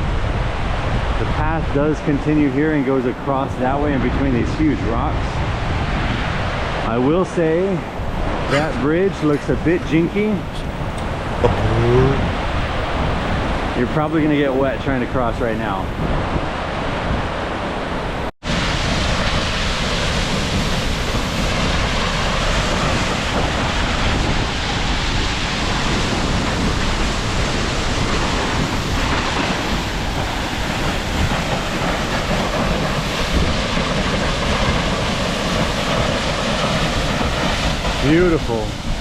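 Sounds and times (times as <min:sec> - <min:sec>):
wind buffeting microphone: 0:00.0 - 0:39.0
waterfall crashing: 0:07.9 - 0:13.8, 0:18.5 - 0:39.0.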